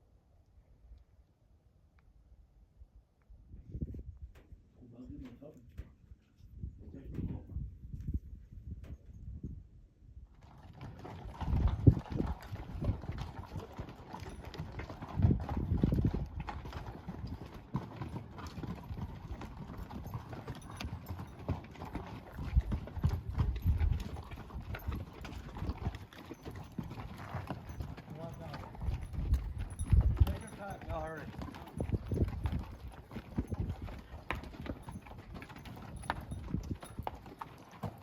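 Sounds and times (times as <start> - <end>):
mule hooves clopping: 10.3 - 38.0.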